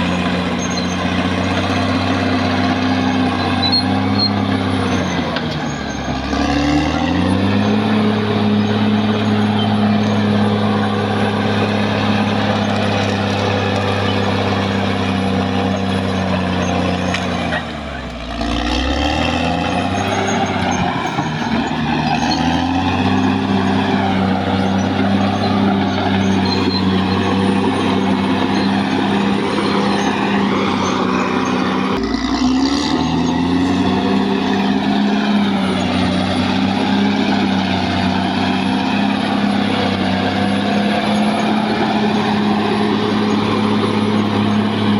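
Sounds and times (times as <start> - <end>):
bulldozer diesel engine running: 0.0 - 44.9.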